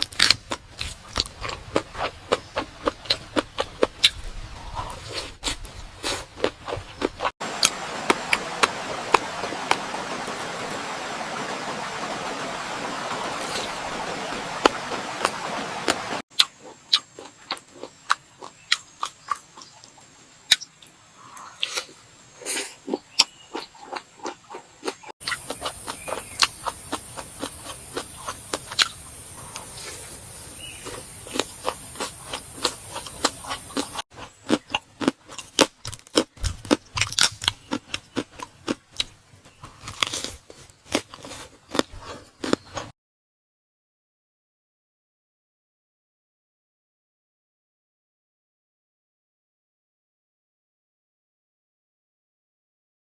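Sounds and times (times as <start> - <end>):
crunching and chewing crispy food: 0.0 - 7.3, 16.4 - 20.6, 22.5 - 42.9.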